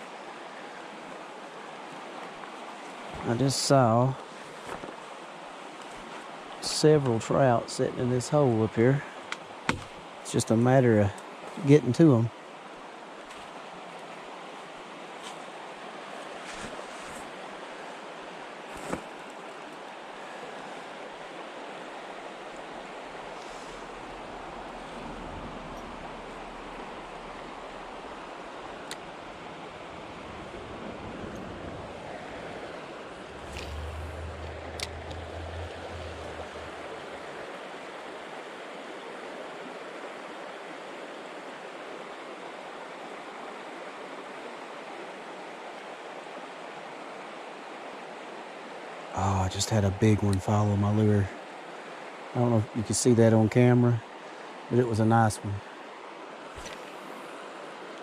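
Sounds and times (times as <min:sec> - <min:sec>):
stream water rushing: 0:00.0 - 0:53.0, 0:54.0 - 0:58.0
water rushing over rocks: 0:18.3 - 0:38.8.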